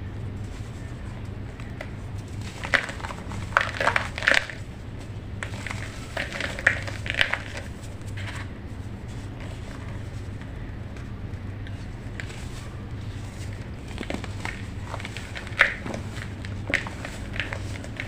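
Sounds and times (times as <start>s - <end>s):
low steady hum: 0.0s - 18.0s
baking soda crunching: 0.8s - 10.7s, 11.7s - 18.0s.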